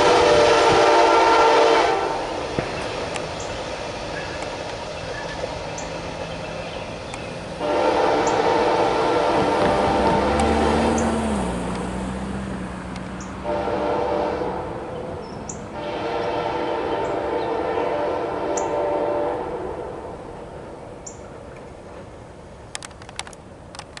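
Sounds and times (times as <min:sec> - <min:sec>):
locomotive air horn blasts: 0:00.0 - 0:02.7, 0:07.6 - 0:11.2, 0:13.4 - 0:20.2
passing train rumble: 0:00.0 - 0:24.0
sharp clicks: 0:12.9 - 0:13.3, 0:22.7 - 0:24.0.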